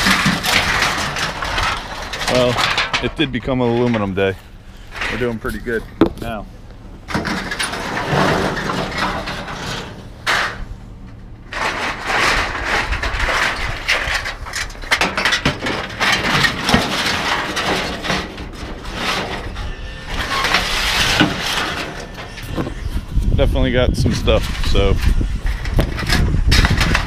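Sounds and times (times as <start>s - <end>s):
scrap metal clattering and scraping: 0.0s - 27.0s.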